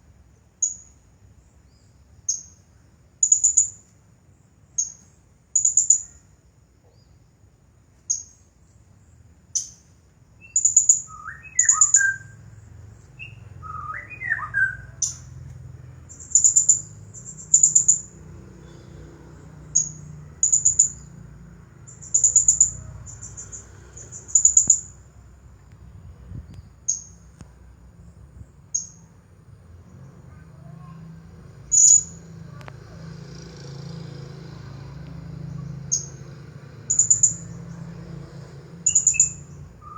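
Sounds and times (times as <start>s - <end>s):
lower whistled bird notes: 10.4s - 15.4s, 38.8s - 39.9s
parrot high-pitched chirps: 10.5s - 12.4s, 13.2s - 15.3s, 38.8s - 39.9s.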